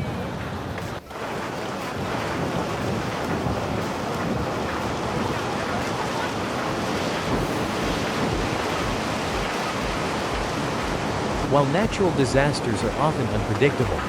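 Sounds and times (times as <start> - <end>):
rushing floodwater: 0.0 - 14.0
wind noise on microphone: 0.0 - 14.0.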